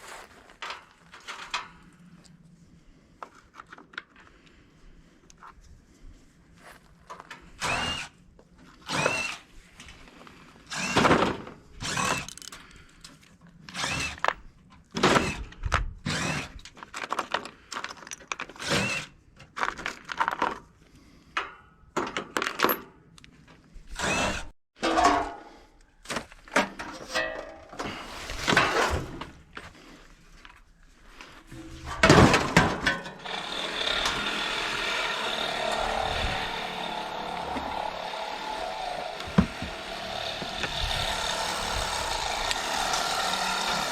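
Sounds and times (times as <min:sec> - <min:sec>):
power drill whining: 0:07.6 - 0:08.2, 0:08.9 - 0:09.4, 0:10.7 - 0:11.1, 0:11.8 - 0:12.6, 0:13.7 - 0:14.3, 0:16.1 - 0:16.6, 0:24.0 - 0:24.6, 0:33.1 - 0:43.9.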